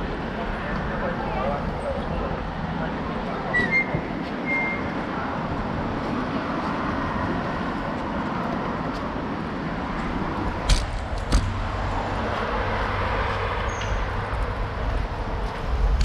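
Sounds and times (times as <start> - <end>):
street traffic noise: 0.0 - 16.0
sharp knocks: 10.6 - 11.6.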